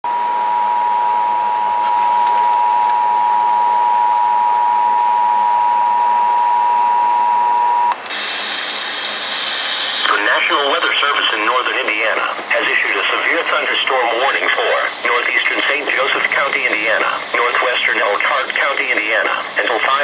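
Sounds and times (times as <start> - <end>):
radio hiss: 7.9 - 20.0.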